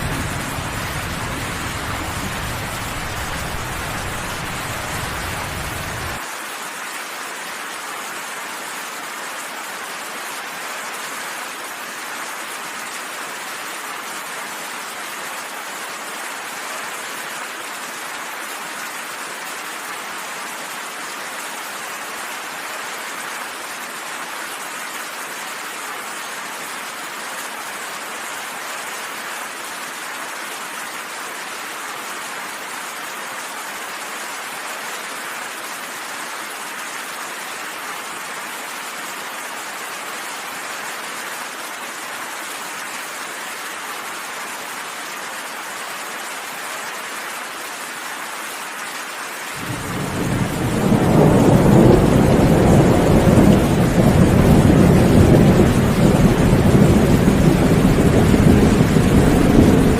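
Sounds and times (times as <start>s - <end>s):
rain hissing: 0.0s - 6.2s, 49.6s - 59.9s
thunder rumbling: 0.0s - 6.2s, 49.6s - 59.9s.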